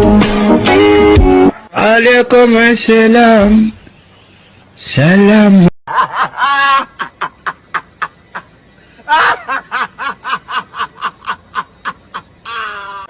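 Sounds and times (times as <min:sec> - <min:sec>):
person laughing: 0:05.9 - 0:13.0.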